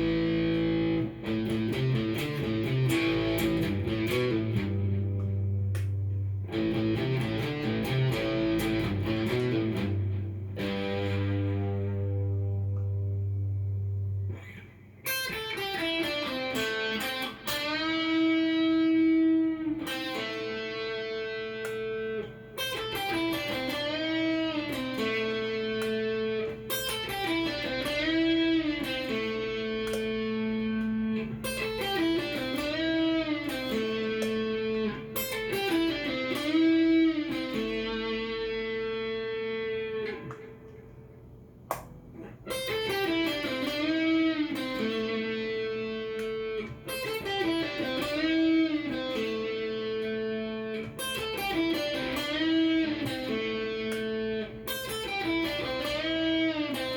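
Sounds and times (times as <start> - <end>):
electric guitar string bends: 0.0 - 41.0.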